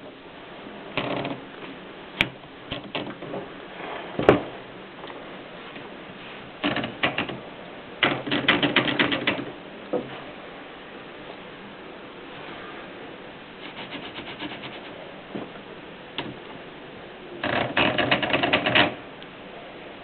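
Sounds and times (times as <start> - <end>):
typewriter keystrokes: 8.0 - 9.4.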